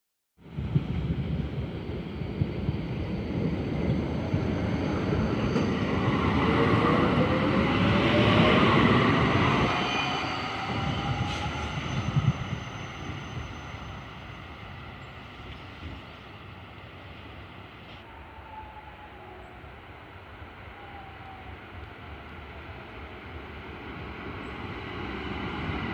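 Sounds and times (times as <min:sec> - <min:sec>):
tram motors whining: 0:02.8 - 0:17.2.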